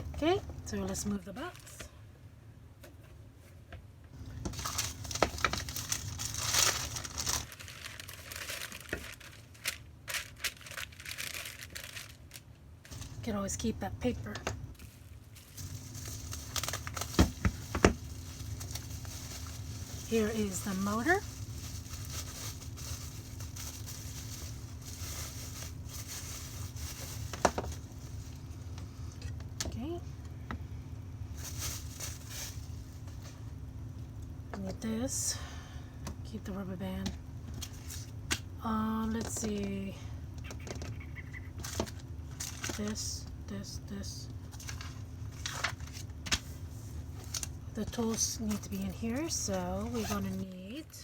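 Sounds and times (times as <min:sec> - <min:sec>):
low background hum: 0:00.0 - 0:51.0
packing paper crinkling: 0:04.2 - 0:13.2, 0:14.7 - 0:28.9, 0:31.3 - 0:33.4, 0:40.4 - 0:43.1, 0:44.5 - 0:50.5
handling rustles and knocks: 0:14.4 - 0:29.8.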